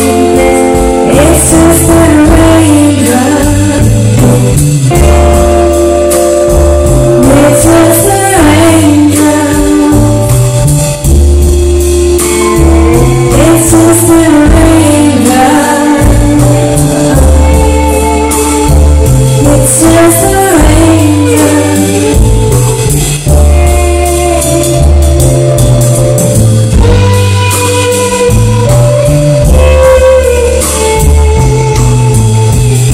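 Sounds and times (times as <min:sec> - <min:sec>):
woman singing: 0:00.0 - 0:11.0, 0:12.2 - 0:25.2
live pop-rock band playing: 0:00.0 - 0:32.9.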